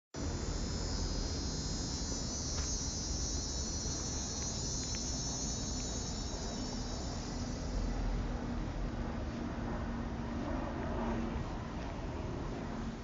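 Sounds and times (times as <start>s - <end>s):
cicadas buzzing: 0.2s - 10.2s.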